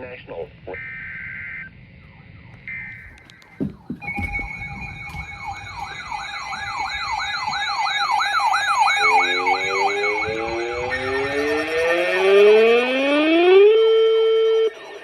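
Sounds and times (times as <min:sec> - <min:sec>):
electronic siren yelping: 0:00.8 - 0:15.0
lower siren rising wail: 0:02.1 - 0:15.0.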